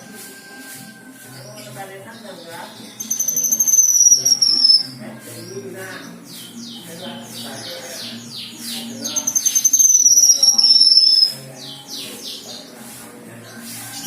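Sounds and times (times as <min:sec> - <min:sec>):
bird trilled whistle: 0:03.0 - 0:04.9, 0:09.2 - 0:11.4
bird short sweeping notes: 0:03.0 - 0:05.0.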